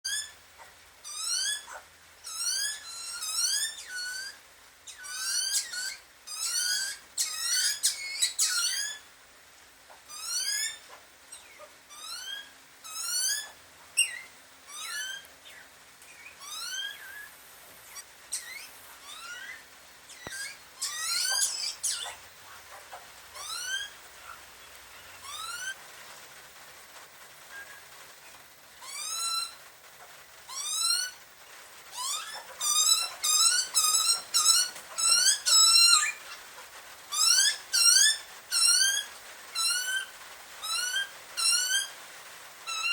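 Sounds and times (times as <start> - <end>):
birds calling with squeaky notes: 1.1 - 9.0, 10.1 - 17.3, 17.9 - 22.2, 32.0 - 36.4.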